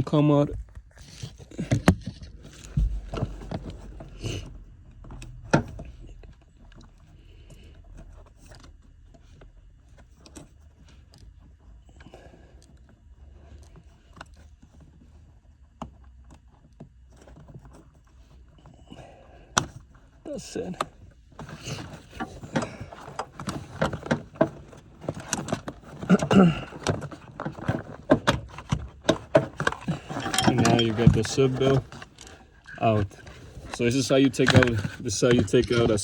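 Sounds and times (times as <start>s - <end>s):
seat belt part clicking and rattling: 1.3s - 18.8s, 19.4s - 36.0s.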